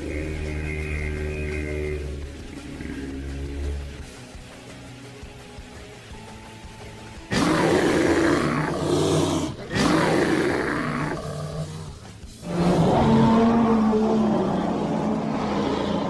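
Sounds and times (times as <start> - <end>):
quiet instrumental music: 0.0 - 16.0
creature roaring: 7.3 - 16.0.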